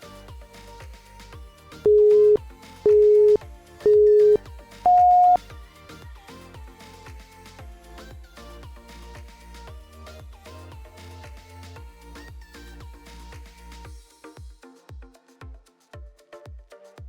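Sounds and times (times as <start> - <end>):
electronic music with beat: 0.0 - 16.8
higher timer beep: 1.9 - 5.4
timer beeps: 1.9 - 5.4.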